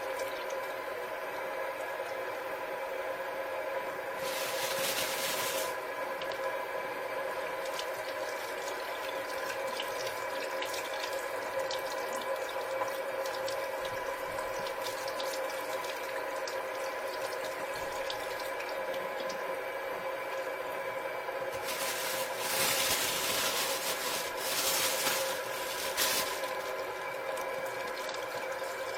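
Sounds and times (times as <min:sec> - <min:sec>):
water running with splashes: 0:21.5 - 0:28.9.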